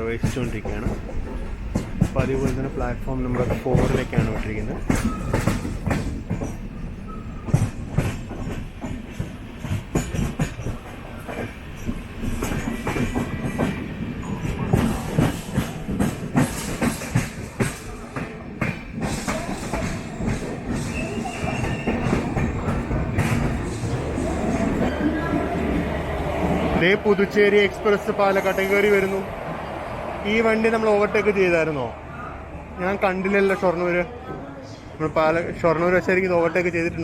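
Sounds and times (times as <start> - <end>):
train wheels clattering over joints: 0.0 - 29.7
steady train rumble: 0.0 - 37.0
faint high wheel squeal: 20.8 - 22.2.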